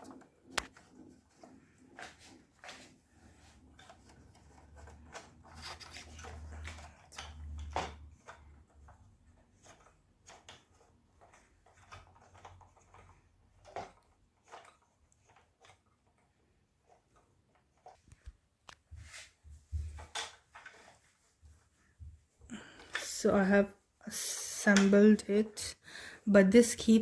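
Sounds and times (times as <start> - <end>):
clicks and rubbing of handled parts: 0.0 - 21.3.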